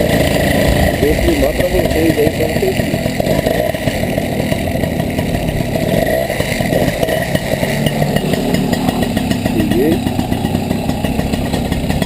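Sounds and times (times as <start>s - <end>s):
two-stroke moped engine running: 0.0s - 12.0s.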